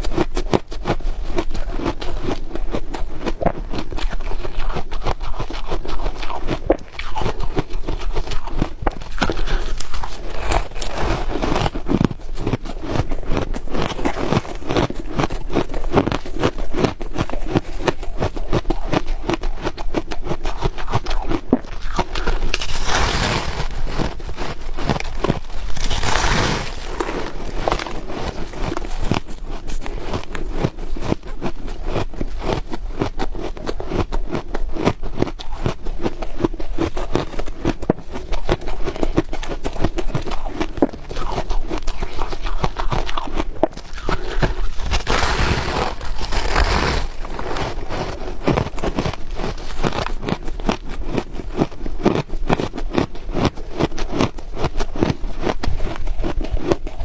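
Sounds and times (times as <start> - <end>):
chewing crunchy ice: 0.0 - 57.0.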